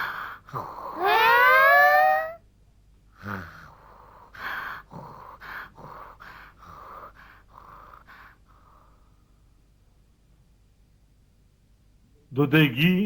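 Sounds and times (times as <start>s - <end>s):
cartoon character snoring: 0.0s - 1.4s, 3.2s - 3.9s, 4.7s - 6.2s.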